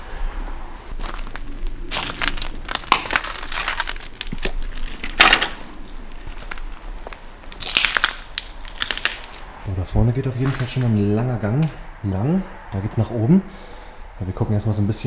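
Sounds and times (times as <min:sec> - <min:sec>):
footsteps crunching over debris: 0:00.9 - 0:10.9.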